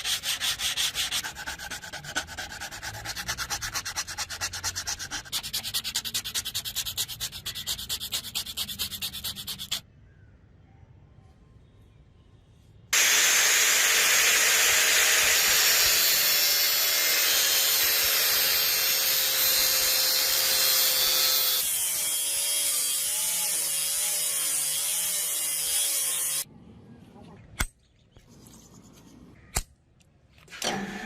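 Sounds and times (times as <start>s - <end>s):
power tool grinding drill bit: 13.0s - 26.4s.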